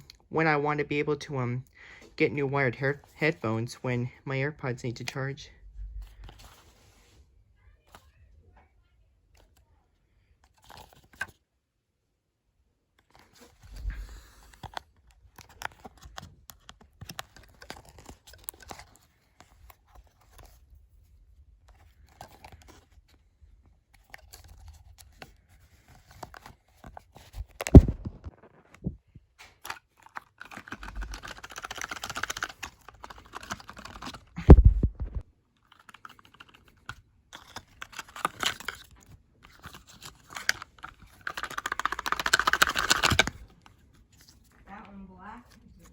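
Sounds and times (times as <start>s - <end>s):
packaging rustling: 14.4s - 20.7s, 24.0s - 44.6s.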